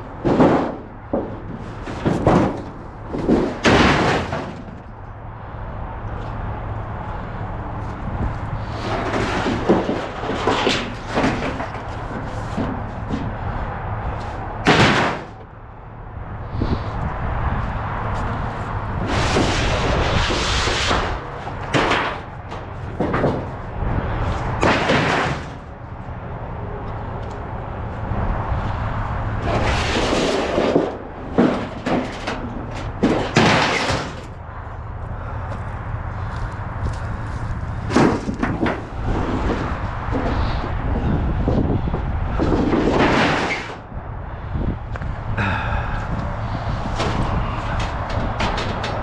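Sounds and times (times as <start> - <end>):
scrap metal bangs and clanks: 0.0 - 5.2, 6.2 - 15.5, 18.8 - 26.2, 29.4 - 36.4, 37.2 - 43.9, 46.7 - 49.0.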